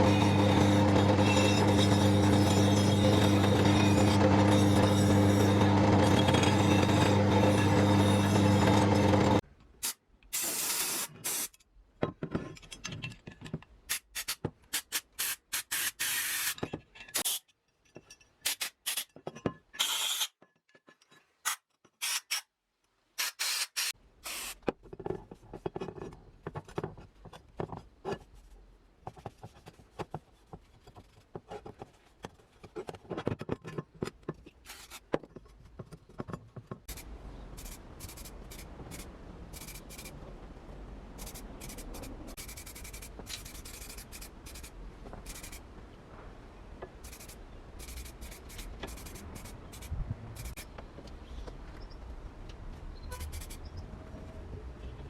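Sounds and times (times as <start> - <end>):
scraping and rubbing metal: 0.0 - 9.4, 41.2 - 45.6, 47.0 - 50.7.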